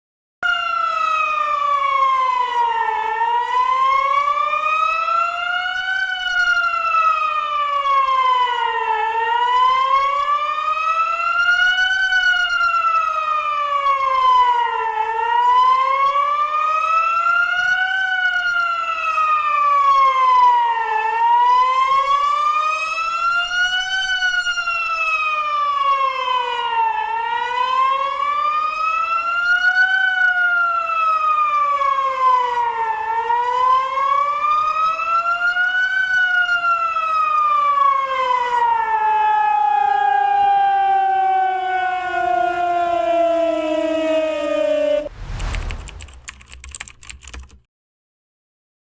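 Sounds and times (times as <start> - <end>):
warning siren wailing: 0.5 - 46.3.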